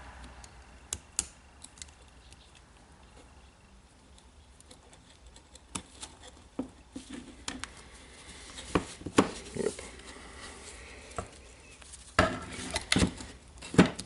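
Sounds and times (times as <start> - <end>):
small plastic parts clicking: 0.2 - 2.7.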